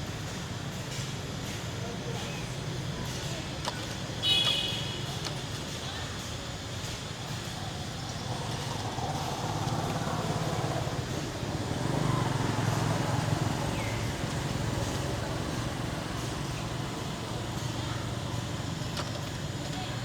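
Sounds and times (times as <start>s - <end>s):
outdoor background noise: 0.0s - 20.0s
vehicle engine rumble: 5.1s - 20.0s.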